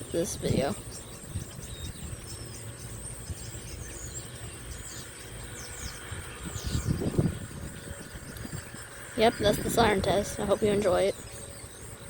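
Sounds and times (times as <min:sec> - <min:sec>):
bird chirps: 0:00.0 - 0:12.0
high insect drone: 0:00.0 - 0:12.0.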